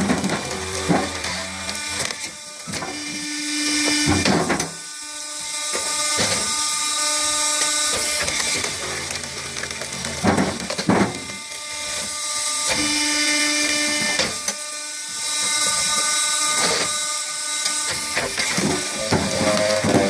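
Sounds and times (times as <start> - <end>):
log splitter motor humming: 0.0 - 20.0
logs cracking: 18.6 - 20.0.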